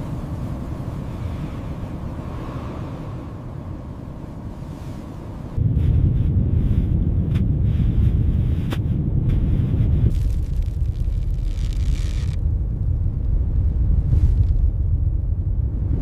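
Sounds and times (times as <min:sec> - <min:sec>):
loud deep rumble: 0:05.6 - 0:16.0
sharp cracks: 0:10.1 - 0:12.4.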